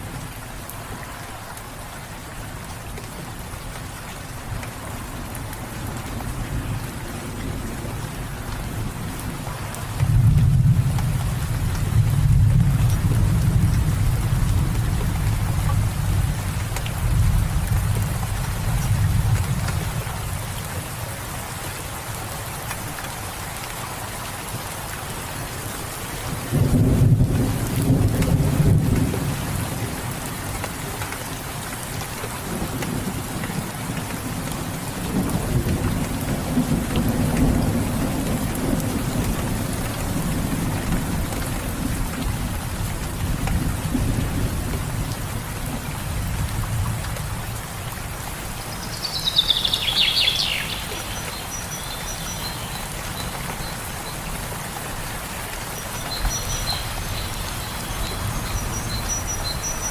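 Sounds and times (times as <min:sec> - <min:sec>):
steady rain: 0:00.0 - 0:59.9
low rolling thunder: 0:26.5 - 0:30.0.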